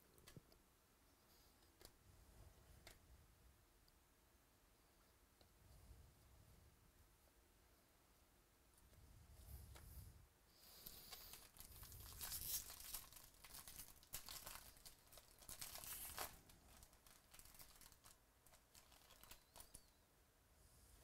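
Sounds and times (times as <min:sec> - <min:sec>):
card pack wrappers crinkling: 0:10.8 - 0:20.0.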